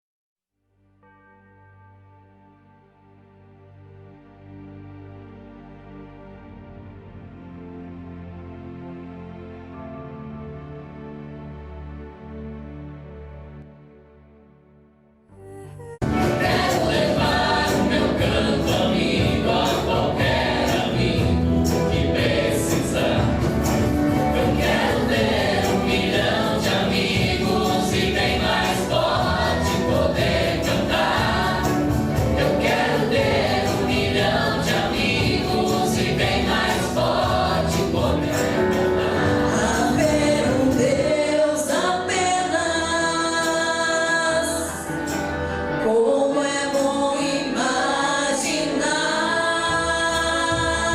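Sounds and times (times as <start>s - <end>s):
instrumental accompaniment with beat: 16.0s - 41.0s
choir singing: 16.0s - 44.8s, 45.8s - 50.9s.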